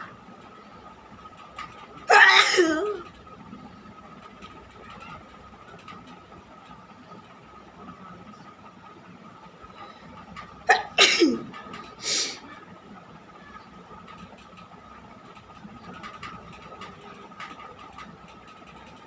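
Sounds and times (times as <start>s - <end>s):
faint steady whine: 0.0s - 19.0s
sharp hiss of breath through nose: 12.0s - 12.4s.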